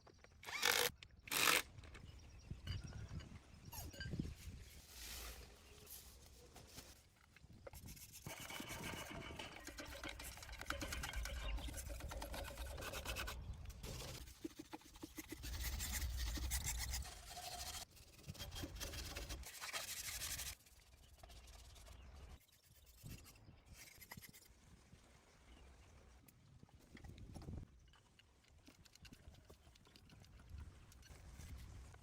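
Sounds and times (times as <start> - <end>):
rasping rubbing and scraping: 7.7 - 24.5.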